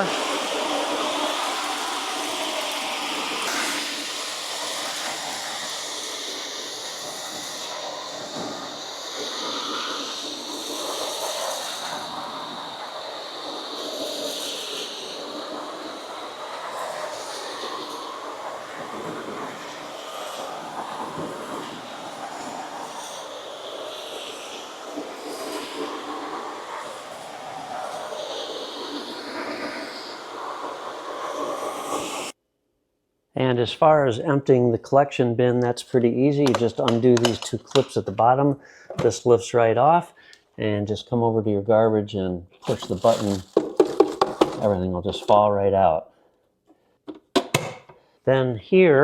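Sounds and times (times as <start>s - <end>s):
vacuum cleaner running: 0.0s - 32.4s, 42.6s - 45.3s.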